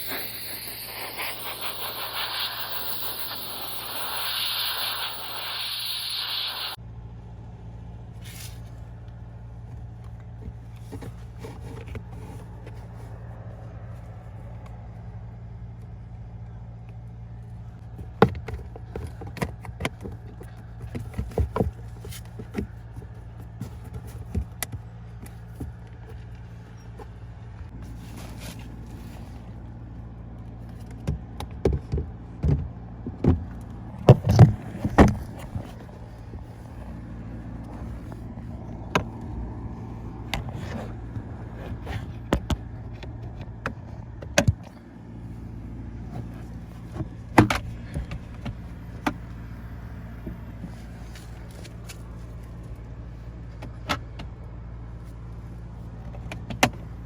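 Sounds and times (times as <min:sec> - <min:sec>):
brief hiss: 0:00.0 - 0:06.8
low hum inside car: 0:00.0 - 0:57.0.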